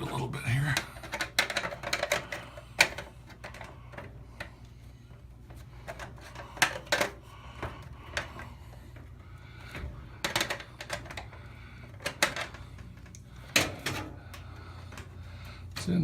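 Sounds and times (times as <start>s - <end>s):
low steady hum: 0.0s - 16.0s
clicks and taps of parts: 0.8s - 4.5s, 5.9s - 8.4s, 9.7s - 15.1s.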